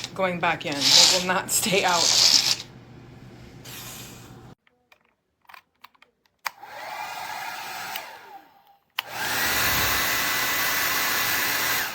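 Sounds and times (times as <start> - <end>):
hair dryer running: 6.5 - 11.9
hair dryer switch click: 7.9 - 8.1, 9.0 - 9.2.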